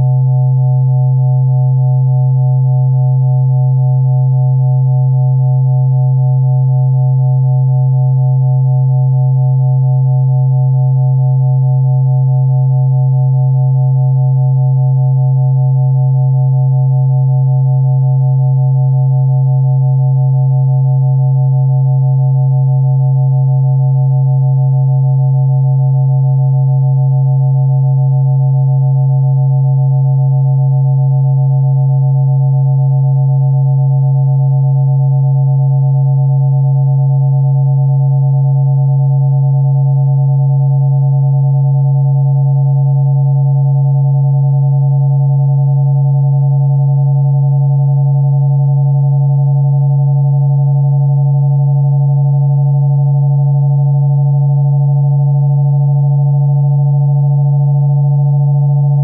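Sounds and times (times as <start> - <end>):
steady low electronic hum: 42.6 - 59.0.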